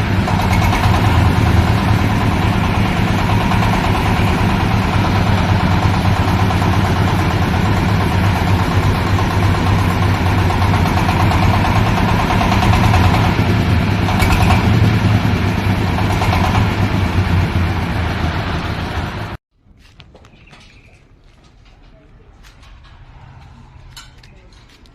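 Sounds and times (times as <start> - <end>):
corn sheller engine hum: 0.0 - 19.4.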